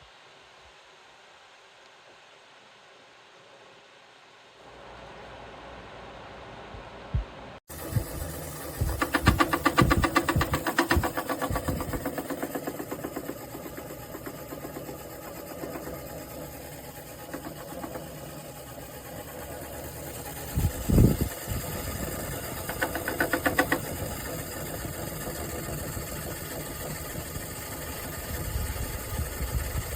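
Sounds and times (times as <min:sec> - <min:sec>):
portable air conditioner rattling: 0:07.8 - 0:29.1.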